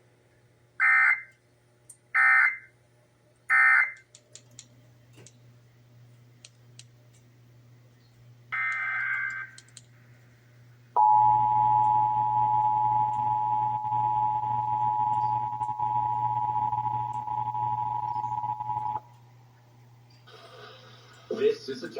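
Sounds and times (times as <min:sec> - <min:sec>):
two-tone attention signal: 0:11.0 - 0:19.0
warbling digital data bursts: 0:13.4 - 0:19.0.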